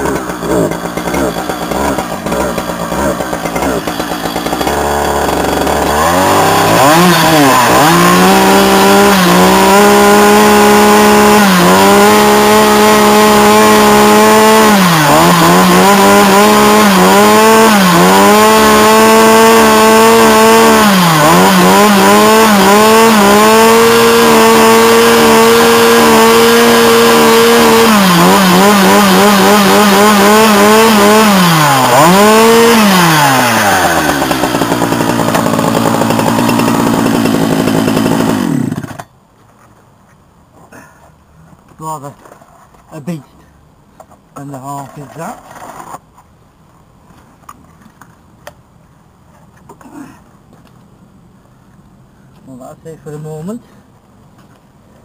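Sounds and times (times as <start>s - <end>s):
chainsaw revving: 0.0s - 39.1s.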